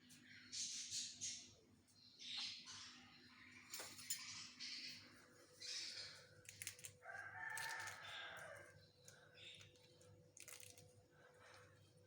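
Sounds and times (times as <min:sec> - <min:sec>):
rooster crowing: 0:07.0 - 0:08.8.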